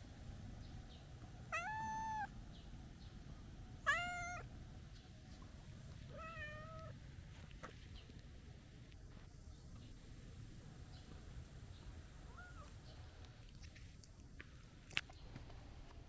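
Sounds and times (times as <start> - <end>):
cat meowing: 1.5 - 2.3, 3.9 - 4.5, 6.1 - 7.0.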